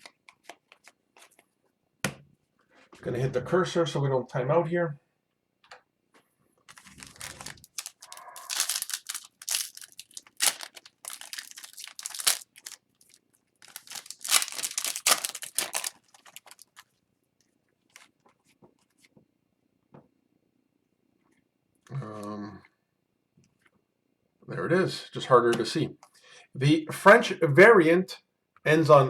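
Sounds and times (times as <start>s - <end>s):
cards rustling: 0.0s - 1.5s, 6.7s - 16.8s
card pack wrapper crinkling: 6.7s - 17.0s.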